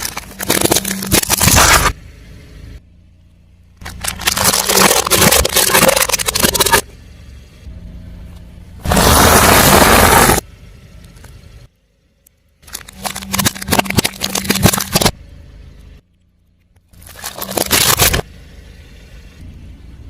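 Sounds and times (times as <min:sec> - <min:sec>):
tyre crushing brittle objects: 0:00.0 - 0:02.0, 0:03.8 - 0:06.9, 0:12.6 - 0:15.2, 0:16.9 - 0:18.3
car engine running: 0:00.0 - 0:20.0.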